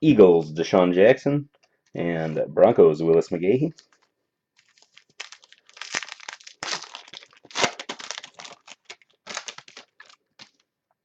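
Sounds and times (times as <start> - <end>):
card packaging crinkling: 3.8 - 10.6.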